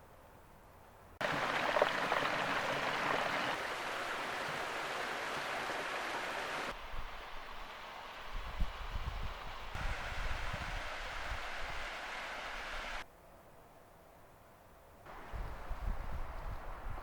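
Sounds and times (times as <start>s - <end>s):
flowing water rushing: 1.2s - 8.3s, 9.7s - 13.0s.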